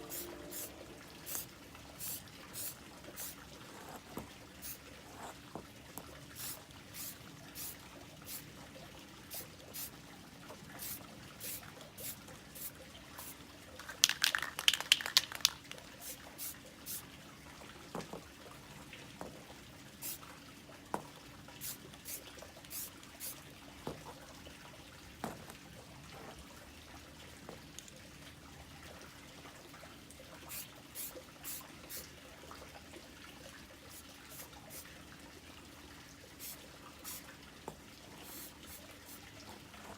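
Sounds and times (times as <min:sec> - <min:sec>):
spray can ball rattling: 0:00.0 - 0:00.7, 0:01.3 - 0:03.4, 0:06.4 - 0:08.4, 0:10.8 - 0:17.0, 0:30.5 - 0:32.0, 0:36.4 - 0:37.2, 0:38.2 - 0:39.2.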